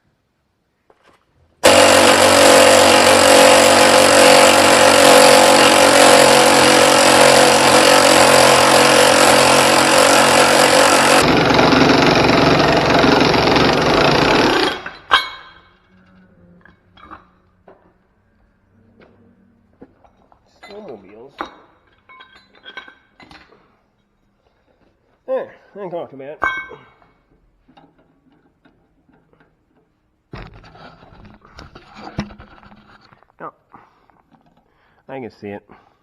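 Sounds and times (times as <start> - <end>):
power tool running: 1.6 - 15.1.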